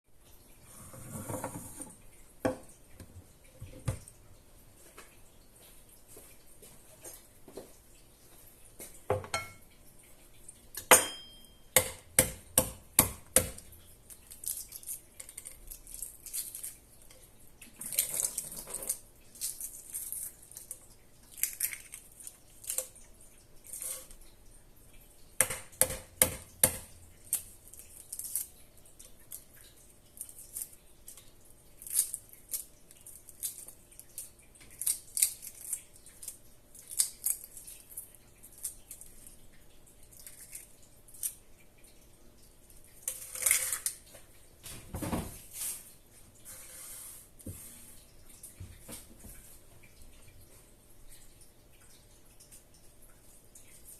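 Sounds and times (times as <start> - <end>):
dish clinking on counter: 9.1 - 9.6, 10.8 - 11.9.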